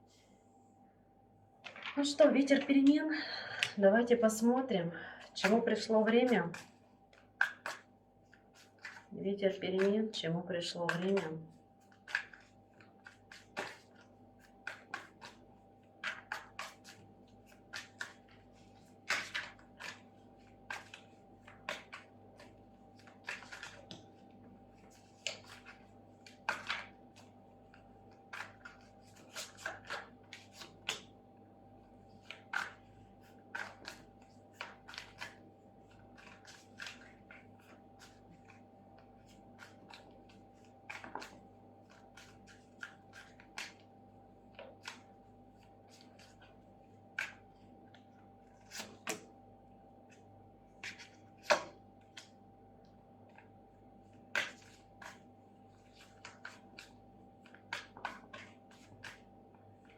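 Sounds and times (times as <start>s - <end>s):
faint steady hum: 0.0s - 59.9s
cards being shuffled: 10.9s - 15.4s, 32.1s - 43.8s, 48.6s - 49.3s.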